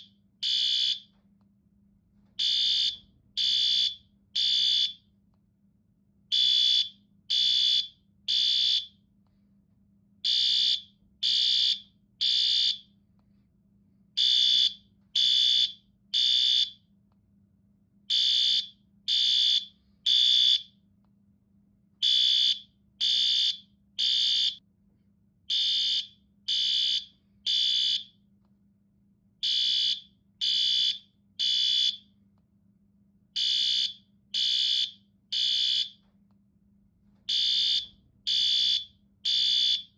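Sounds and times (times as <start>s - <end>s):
fire alarm beeping: 0.0s - 1.2s, 2.4s - 5.1s, 6.3s - 9.0s, 10.2s - 12.9s, 14.2s - 16.8s, 18.1s - 20.8s, 22.0s - 24.6s, 25.5s - 28.2s, 29.4s - 32.1s, 33.4s - 36.1s, 37.2s - 39.9s.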